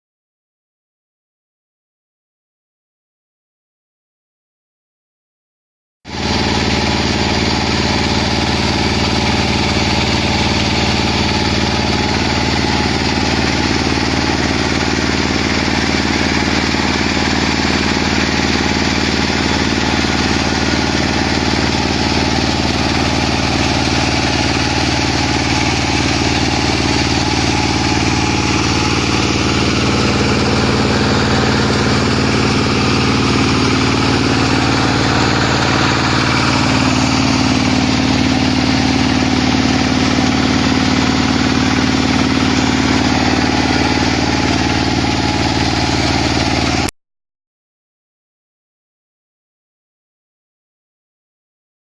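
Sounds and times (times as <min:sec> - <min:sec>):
drilling rig engine running: 0:06.1 - 0:46.9.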